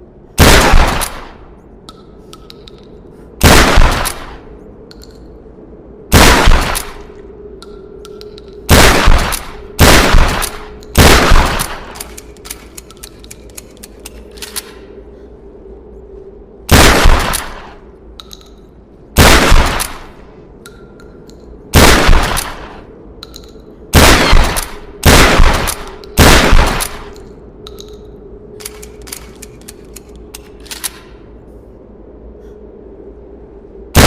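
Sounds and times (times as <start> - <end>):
shotgun shots: 0.4 - 1.4, 3.4 - 4.4, 6.1 - 7.0, 8.7 - 12.0, 16.7 - 17.8, 19.2 - 20.1, 21.8 - 22.8, 24.0 - 27.1.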